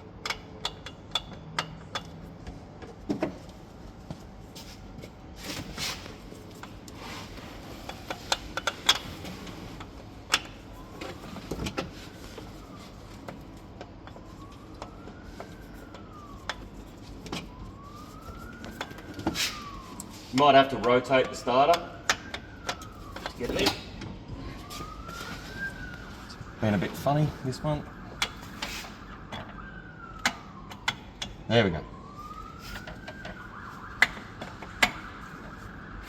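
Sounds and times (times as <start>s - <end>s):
faint siren wailing: 0.0s - 36.0s
metal clicks and knocks: 0.2s - 3.4s.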